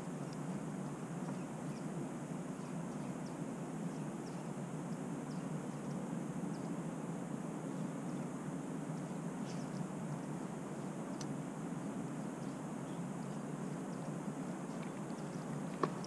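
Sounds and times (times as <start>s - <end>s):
low outdoor rumble: 0.0s - 16.0s
faint bird chirps: 0.2s - 6.8s, 8.9s - 11.3s, 12.1s - 16.0s.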